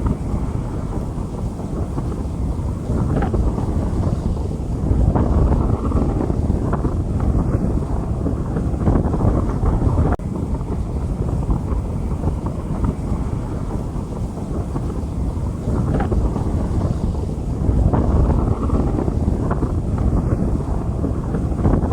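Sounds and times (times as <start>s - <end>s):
low rumble: 0.0s - 21.9s
rain on a street: 0.0s - 21.9s
wind buffeting microphone: 0.0s - 21.9s.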